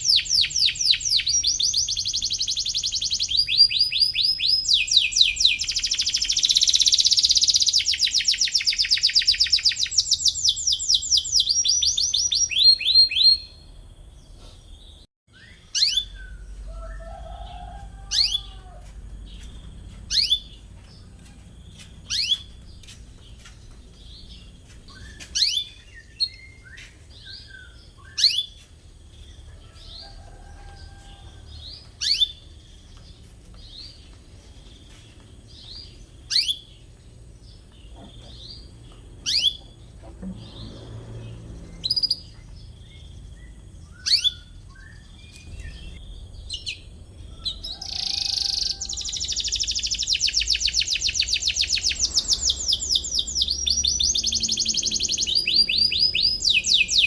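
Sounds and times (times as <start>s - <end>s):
canary chirping and trilling: 0.0s - 13.7s, 15.3s - 16.6s, 18.0s - 30.2s, 31.5s - 32.4s, 35.5s - 36.8s, 37.9s - 57.0s.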